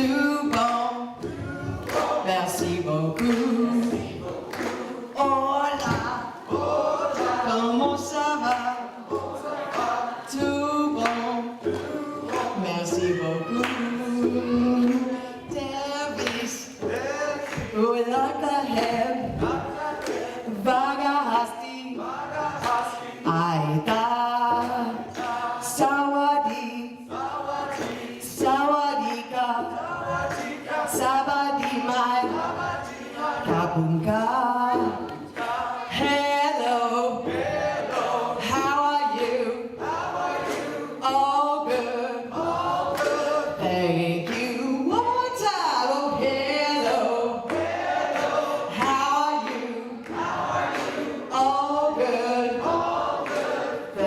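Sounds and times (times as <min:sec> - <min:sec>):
group of voices chanting: 0:08.5 - 0:15.5, 0:29.7 - 0:31.1, 0:35.0 - 0:36.0, 0:37.2 - 0:38.6, 0:39.2 - 0:41.1, 0:46.9 - 0:54.0.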